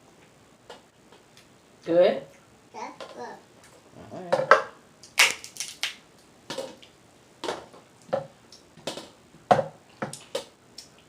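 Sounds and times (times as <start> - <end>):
crab shells cracking: 5.0 - 6.9.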